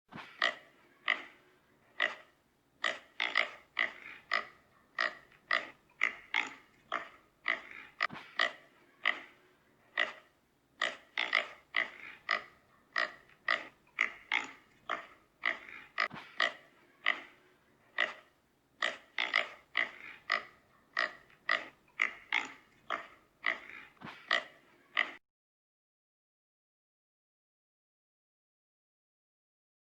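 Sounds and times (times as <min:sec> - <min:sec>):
pig squealing: 0:00.2 - 0:01.4, 0:02.0 - 0:09.4, 0:10.0 - 0:17.4, 0:18.0 - 0:25.2.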